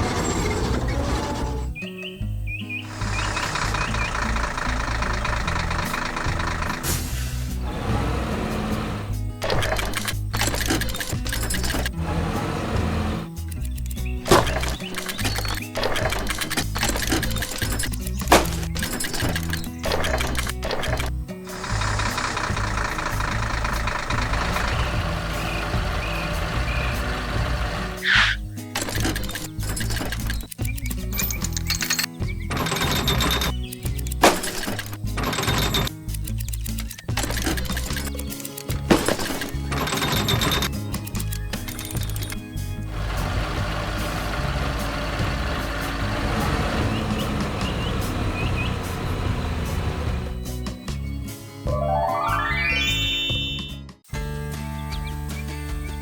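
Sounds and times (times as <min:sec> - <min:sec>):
construction machine engine running: 0:00.0 - 0:50.8
loud short hiss: 0:06.8 - 0:07.6
faint high chirps: 0:51.7 - 0:53.8
short beeps: 0:51.7 - 0:53.8.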